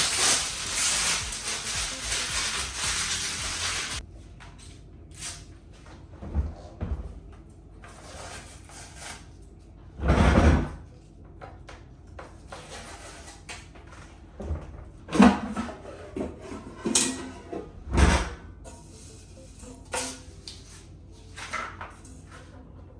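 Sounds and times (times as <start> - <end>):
packaging rustling: 0.0 - 4.0.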